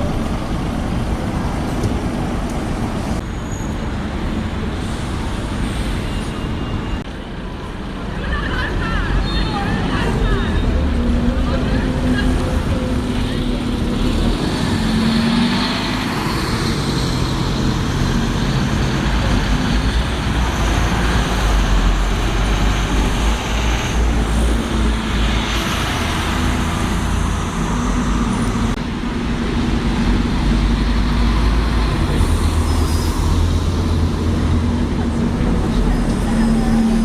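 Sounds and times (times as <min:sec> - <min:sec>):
passing vehicle engines: 0:07.9 - 0:37.0.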